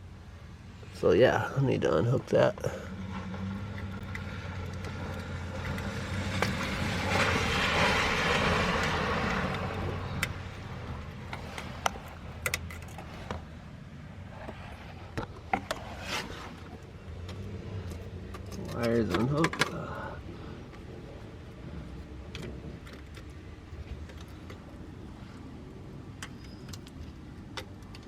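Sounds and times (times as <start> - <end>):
rushing noise: 2.2 - 16.8.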